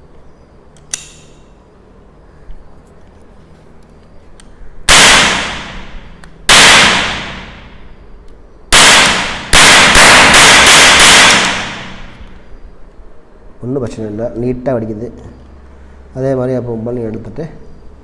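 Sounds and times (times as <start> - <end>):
toy cap gun cracks: 0.8 - 1.4.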